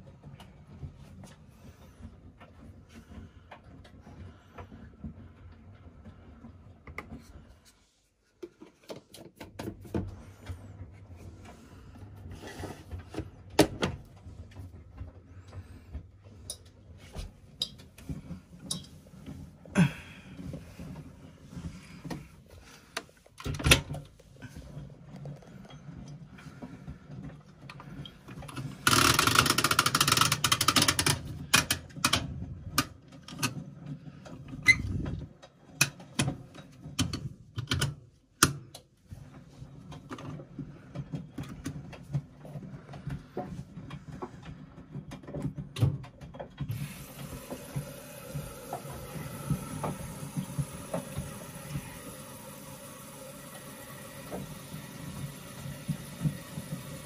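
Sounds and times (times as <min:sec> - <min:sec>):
washing machine motor hum: 0:00.0 - 0:07.9, 0:09.6 - 0:57.0.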